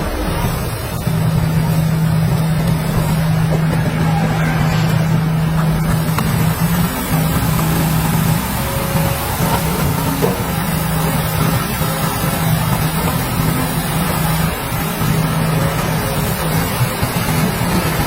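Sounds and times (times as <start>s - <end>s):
construction machine diesel engine: 5.2s - 11.4s.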